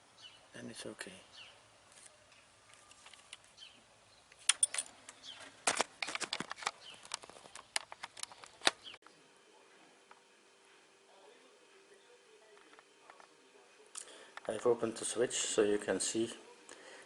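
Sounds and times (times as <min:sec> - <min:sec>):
faint birdsong: 0:00.0 - 0:05.6, 0:06.5 - 0:09.6.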